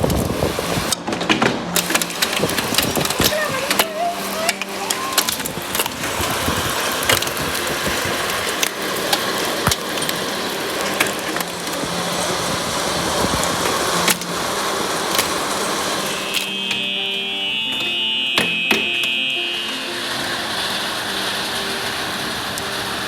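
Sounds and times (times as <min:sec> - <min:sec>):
hailstones clicking on hard surfaces: 0:00.0 - 0:16.5
hail and rain rushing: 0:00.0 - 0:23.0.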